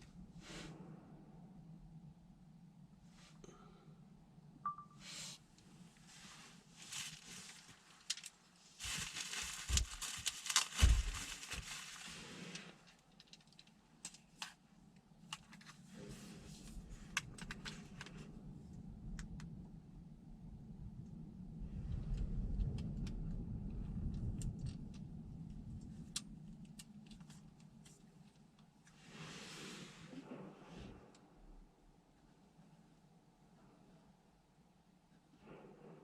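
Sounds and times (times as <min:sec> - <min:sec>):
low steady hum: 0:00.0 - 0:36.0
rustling and crinkling: 0:05.8 - 0:18.5, 0:21.8 - 0:31.1.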